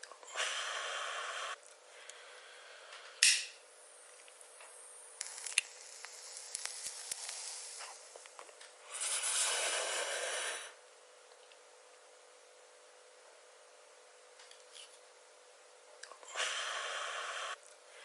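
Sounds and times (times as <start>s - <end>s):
puff of air: 5.8s - 8.2s, 8.8s - 10.8s
breathy exhale: 8.9s - 10.8s, 16.3s - 18.0s.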